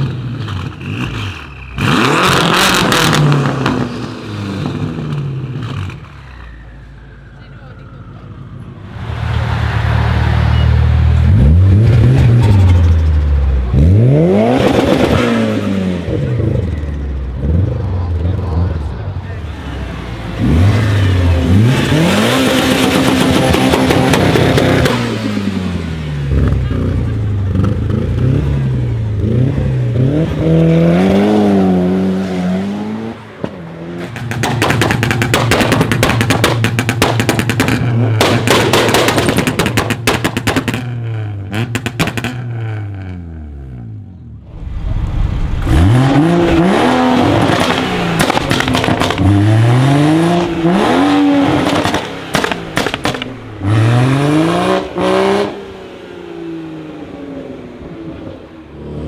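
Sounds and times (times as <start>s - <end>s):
sports car engine revving: 8.8s - 59.0s
exhaust cracks and pops: 33.4s - 41.0s, 45.7s - 53.7s.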